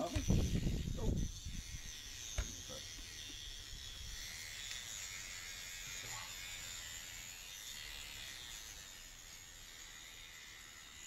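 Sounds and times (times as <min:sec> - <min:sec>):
rotary tool grinding metal: 0:00.0 - 0:11.0.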